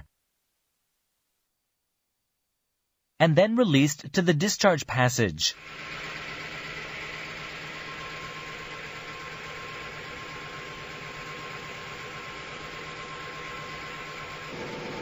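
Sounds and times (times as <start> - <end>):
compressor humming and hissing: 5.6 - 15.0.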